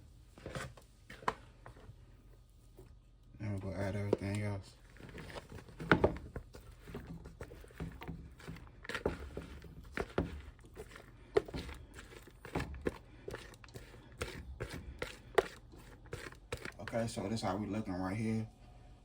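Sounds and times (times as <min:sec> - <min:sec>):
utensil scraping against a dish: 0:06.5 - 0:17.6.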